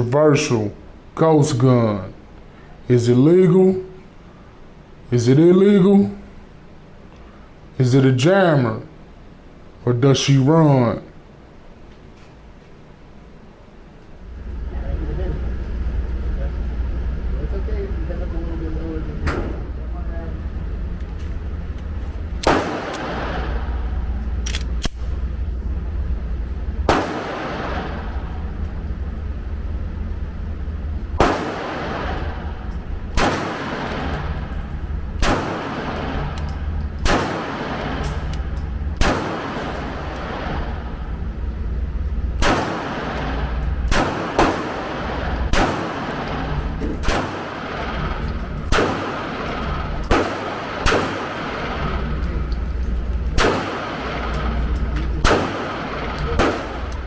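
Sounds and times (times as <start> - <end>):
steady low rumble: 0.0 - 57.0
pistol shots with ringing tail: 22.4 - 24.8, 26.9 - 28.6, 31.2 - 57.0.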